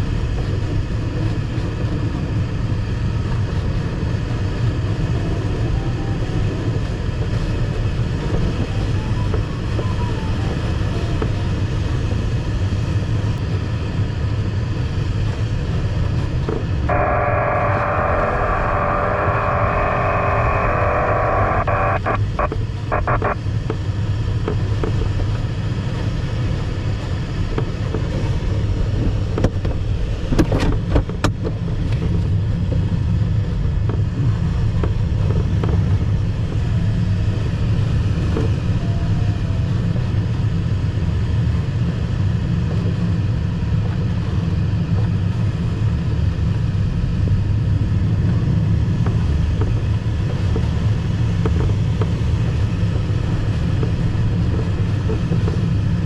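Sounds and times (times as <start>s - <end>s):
low cockpit rumble: 0.0s - 56.0s
high tone: 16.9s - 23.4s.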